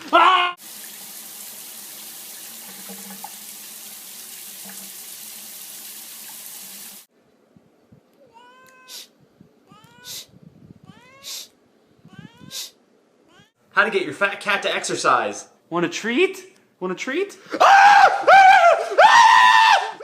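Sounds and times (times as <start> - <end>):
water running from tap: 0.6 - 7.1
cat meowing: 8.2 - 13.6.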